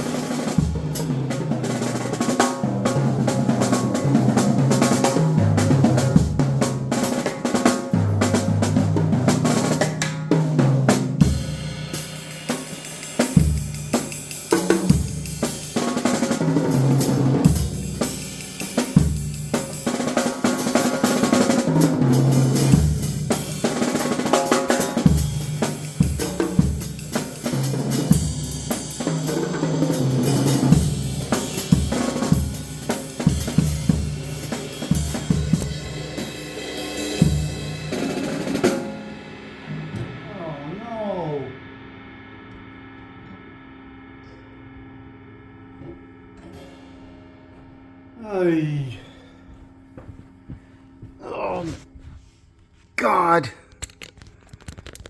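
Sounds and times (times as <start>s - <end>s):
drum kit solo: 0.0s - 42.5s.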